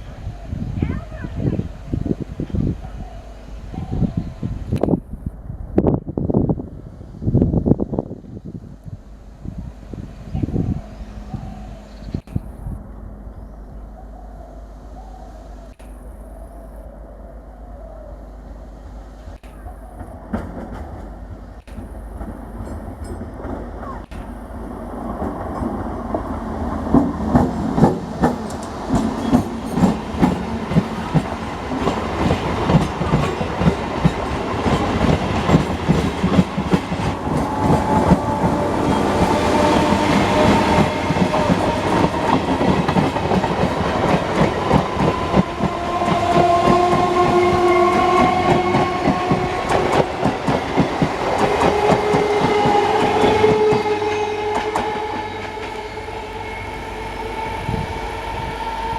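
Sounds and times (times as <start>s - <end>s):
train rumble: 0.0s - 58.9s
train wheels clacking: 19.3s - 58.0s.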